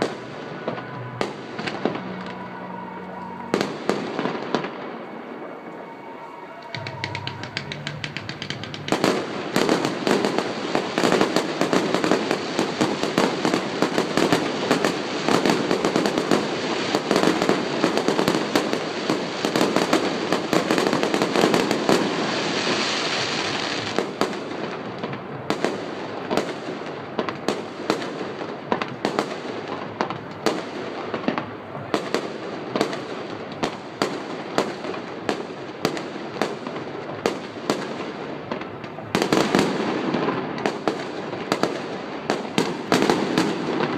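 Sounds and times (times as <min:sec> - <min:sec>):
firework hissing: 0:00.0 - 0:24.5
fireworks crackling: 0:00.0 - 0:43.9.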